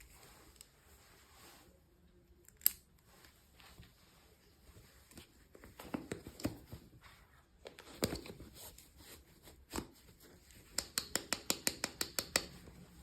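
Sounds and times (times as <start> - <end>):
plastic pieces clicking and tapping: 10.7 - 12.6.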